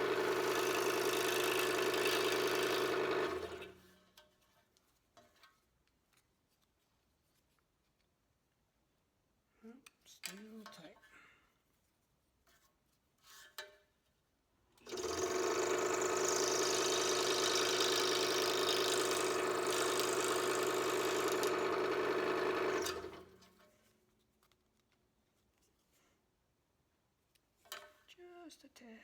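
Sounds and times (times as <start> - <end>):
scroll saw cutting plywood: 0.0 - 3.7, 14.9 - 23.3.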